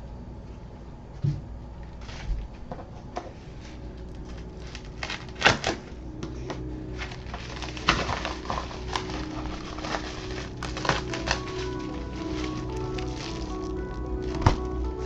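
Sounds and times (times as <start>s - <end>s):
package being handled: 4.0s - 5.9s, 6.5s - 15.0s.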